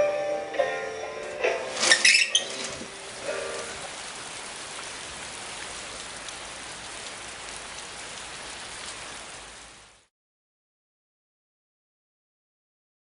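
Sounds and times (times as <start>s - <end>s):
steady rain falling: 0.8s - 10.1s.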